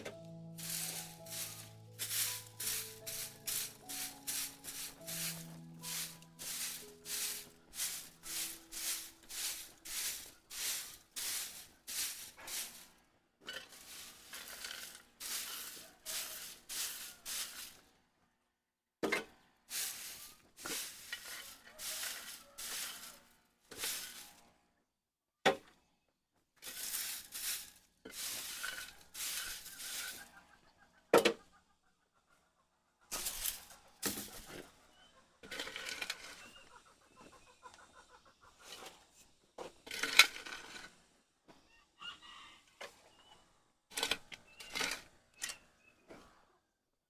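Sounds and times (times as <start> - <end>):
rhythmic rasping strokes: 0.0 - 12.8.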